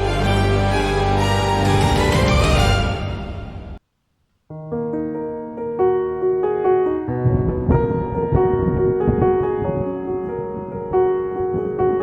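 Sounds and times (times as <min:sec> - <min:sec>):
dense music track: 0:00.0 - 0:03.8
slow piano piece: 0:00.0 - 0:03.8, 0:04.5 - 0:12.0.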